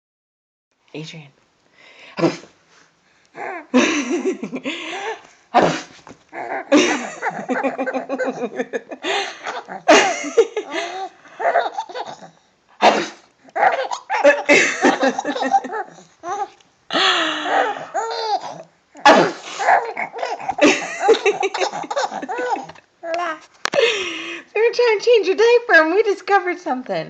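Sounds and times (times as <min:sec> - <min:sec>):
baby laughing: 0:06.4 - 0:12.4, 0:13.5 - 0:16.6, 0:17.3 - 0:24.0.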